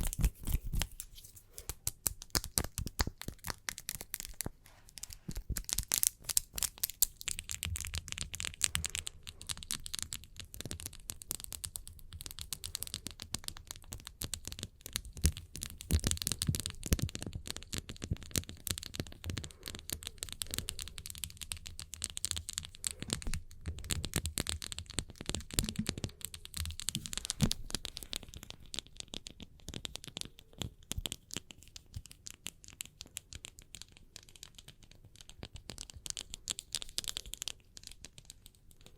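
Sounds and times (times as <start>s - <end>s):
hands rubbing together: 0.0s - 6.7s.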